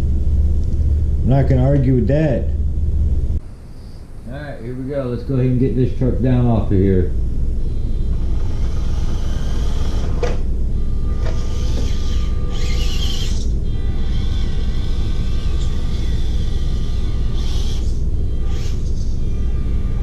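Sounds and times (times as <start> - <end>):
low rumble: 0.0 - 12.6
toy car motor and gears whining: 7.6 - 20.0.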